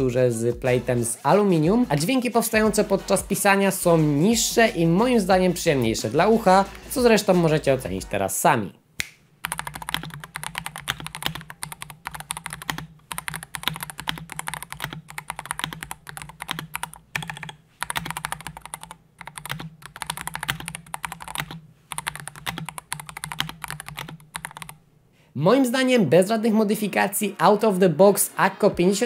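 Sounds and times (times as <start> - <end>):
mechanical keyboard typing: 9.4 - 24.8.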